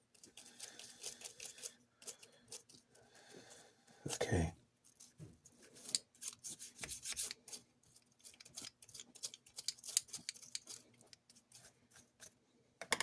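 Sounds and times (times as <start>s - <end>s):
hand tool clicking and scraping metal: 7.0s - 11.4s.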